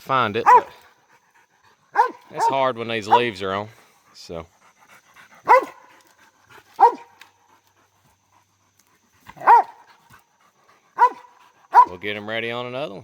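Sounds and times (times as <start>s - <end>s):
dog barking: 0.4s - 0.8s, 1.9s - 3.4s, 5.4s - 5.9s, 6.8s - 7.2s, 9.3s - 9.9s, 11.0s - 12.0s.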